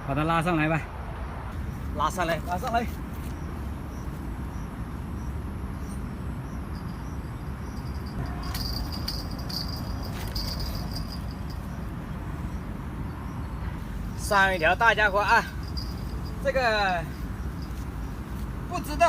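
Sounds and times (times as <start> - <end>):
low outdoor rumble: 1.6 - 19.0
insects chirring: 1.7 - 19.0.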